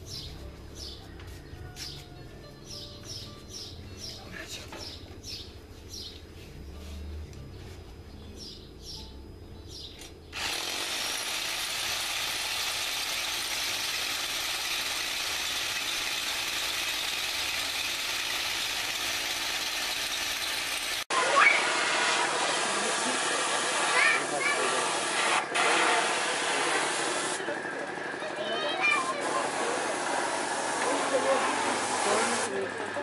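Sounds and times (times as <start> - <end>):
birds chirping: 0.0 - 6.8, 7.4 - 10.3
loud rushing hiss: 20.7 - 27.5, 28.8 - 32.6.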